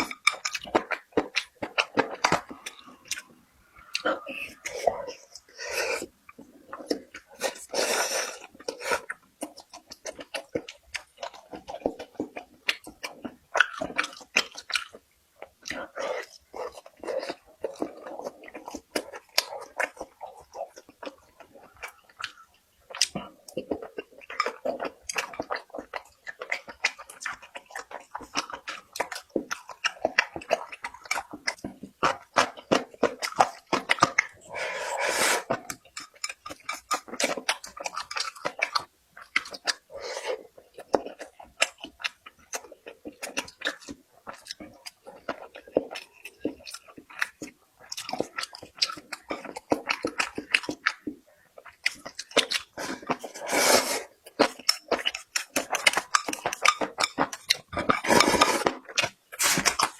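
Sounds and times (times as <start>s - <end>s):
wet chewing and mouth clicks: 0.0s - 59.9s
breathy noise: 2.0s - 9.1s, 34.4s - 35.6s.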